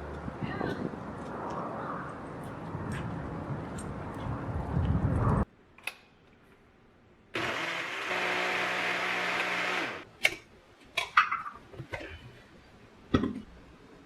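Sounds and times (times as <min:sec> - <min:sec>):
small motor humming: 0:07.4 - 0:10.0.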